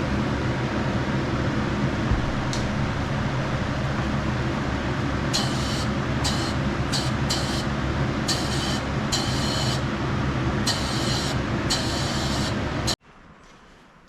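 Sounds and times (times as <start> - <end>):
mechanical hum: 0.0 - 14.0
spray gun air hiss: 5.3 - 10.0, 10.6 - 13.0.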